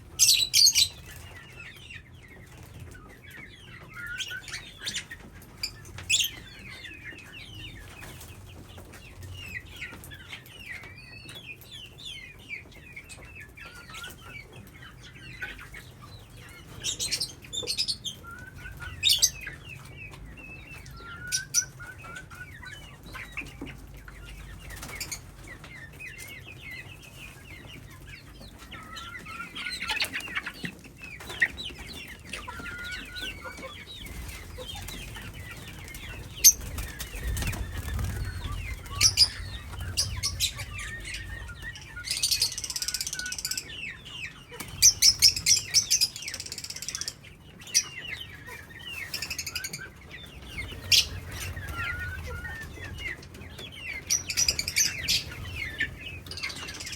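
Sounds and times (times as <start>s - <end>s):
wings flapping: 33.5s - 43.6s
parrots chattering: 36.0s - 44.0s.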